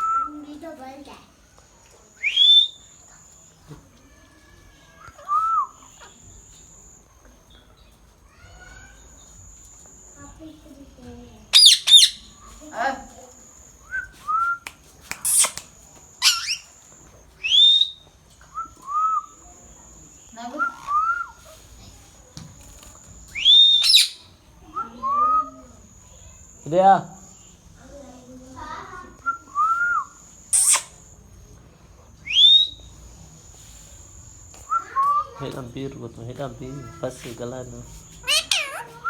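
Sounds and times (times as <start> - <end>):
parrot whistling: 2.2 - 2.8, 11.6 - 12.3, 15.2 - 15.6, 16.2 - 16.7, 17.4 - 18.0, 23.3 - 25.6, 29.2 - 31.0, 32.2 - 32.8, 38.2 - 39.0
parrot screeching and squawking: 11.6 - 12.3, 15.2 - 15.6, 16.2 - 16.7, 23.6 - 24.2, 30.5 - 30.9, 38.2 - 39.0.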